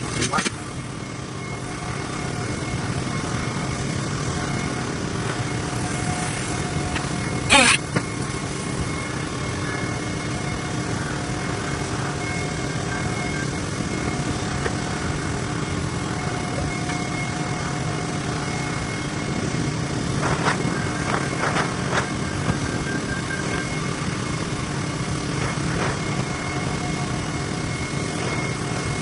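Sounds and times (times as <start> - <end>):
faint thin whine: 0.0 - 29.0
welding drone and hiss: 0.0 - 29.0.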